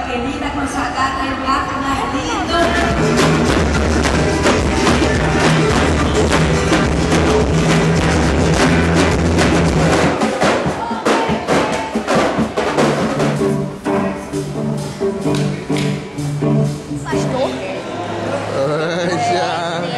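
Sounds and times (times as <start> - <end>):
bass line: 1.9 - 11.8, 12.8 - 19.1
drums: 2.3 - 17.7.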